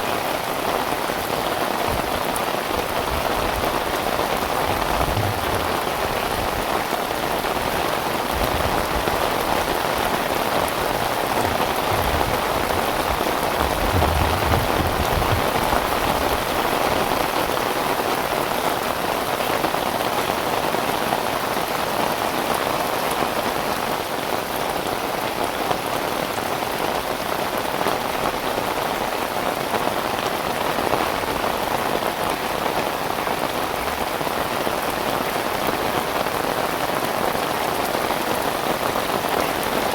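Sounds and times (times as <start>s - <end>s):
heavy rain falling: 0.0s - 39.9s
low rumbles: 4.3s - 6.9s, 8.3s - 17.0s.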